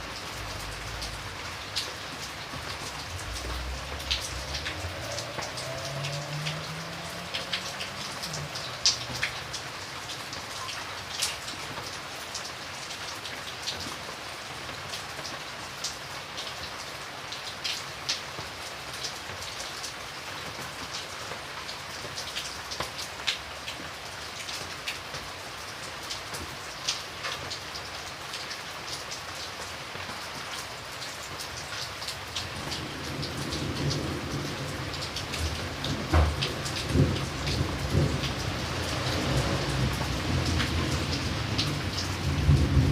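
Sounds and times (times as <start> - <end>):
steady rain falling: 0.0 - 42.9
low rumble of thunder: 2.6 - 9.5, 32.5 - 42.9.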